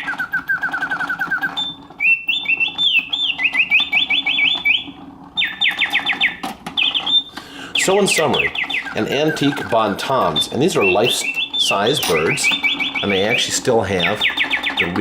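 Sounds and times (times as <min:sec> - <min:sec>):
mechanical birdsong whistling: 0:00.0 - 0:15.0
clockwork mechanism clicking: 0:07.8 - 0:15.0.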